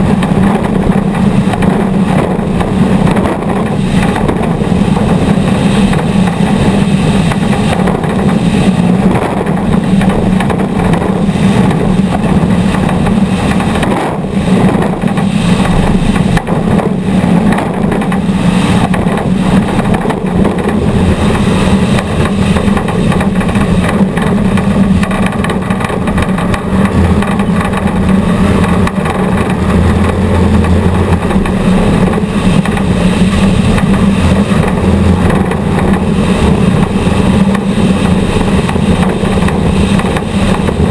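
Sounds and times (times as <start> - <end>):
constant noisy rush: 0.0 - 40.9
race vehicle engine running hard: 0.0 - 40.9.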